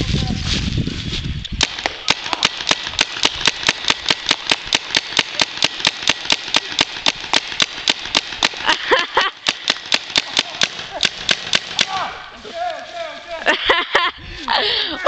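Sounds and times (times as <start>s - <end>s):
paintball gun firing: 1.6s - 12.2s.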